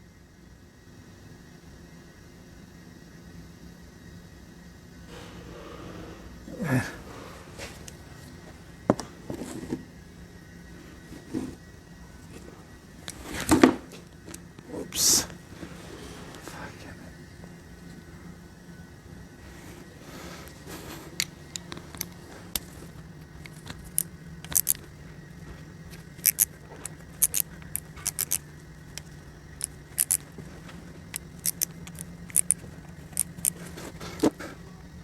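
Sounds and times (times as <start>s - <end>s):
low hum: 5.0s - 9.3s
metallic clicks of hand tool: 23.4s - 24.8s, 25.9s - 30.3s, 31.1s - 33.6s.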